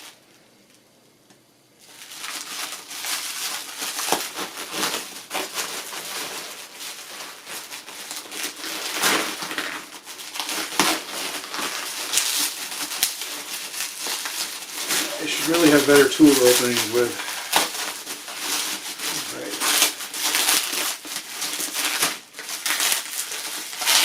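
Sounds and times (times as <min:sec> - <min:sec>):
packing material crumpling: 0:01.8 - 0:24.0.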